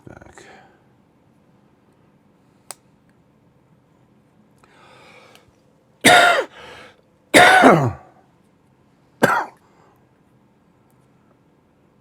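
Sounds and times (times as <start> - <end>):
man coughing: 6.0 - 6.6, 7.4 - 8.1, 9.2 - 9.6.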